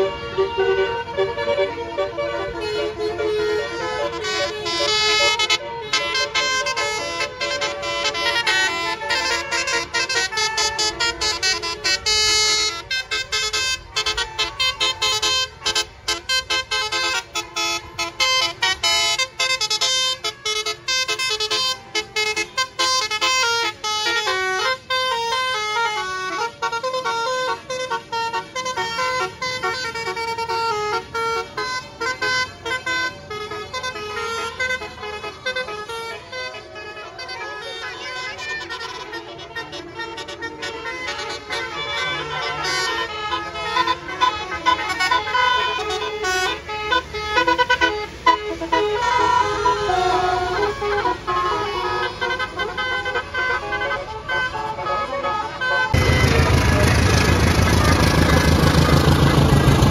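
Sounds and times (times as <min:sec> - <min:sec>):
bus musical horn playing tune: 0:00.0 - 0:59.9.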